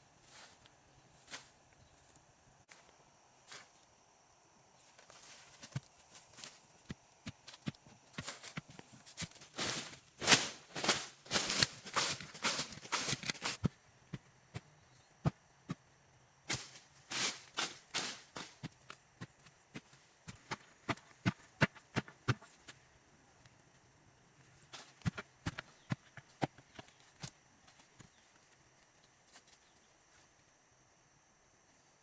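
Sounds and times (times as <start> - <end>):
rustling scraping noise: 8.2 - 13.7.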